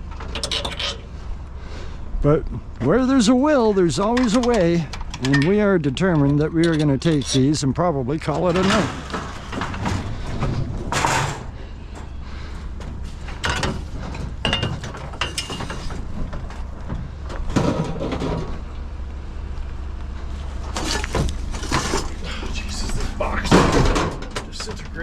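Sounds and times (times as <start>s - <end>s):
steady low hum: 0.0s - 25.0s
appliance knocking and scraping: 8.2s - 18.7s, 20.6s - 25.0s.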